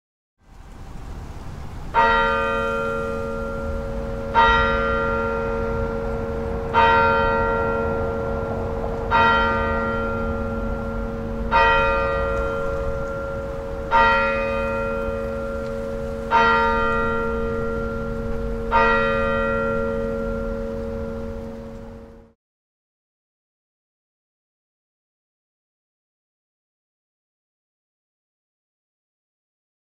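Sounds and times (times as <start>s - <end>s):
steady low rumble: 0.5s - 22.4s
church bell tolling: 1.9s - 22.4s.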